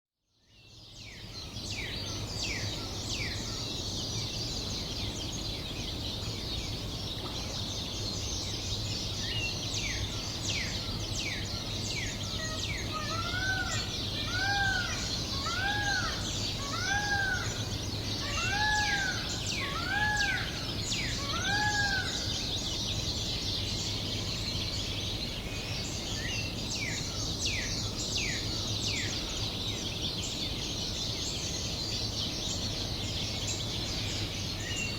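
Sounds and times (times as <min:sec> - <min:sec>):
birds singing high sweeping notes: 0:08.2 - 0:24.9
bird giving arching calls: 0:12.4 - 0:22.3.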